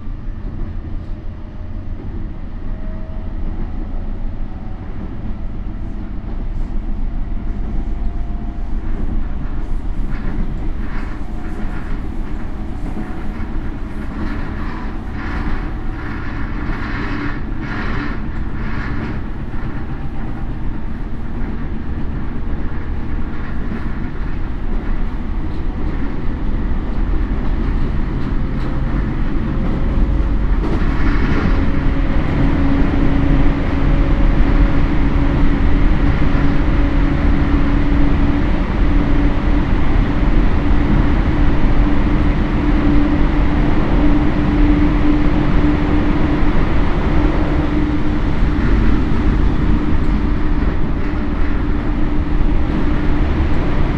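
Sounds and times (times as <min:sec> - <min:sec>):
train wheels rumbling on rails: 0:00.0 - 0:53.9
clicking over rail joints: 0:06.4 - 0:33.4.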